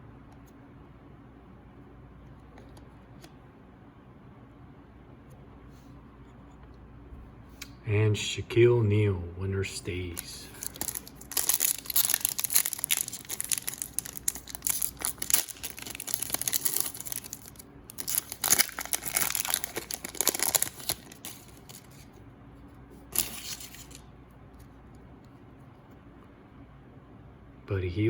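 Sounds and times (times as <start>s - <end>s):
plastic wrapper tearing and crinkling: 10.1s - 22.1s, 23.1s - 24.0s.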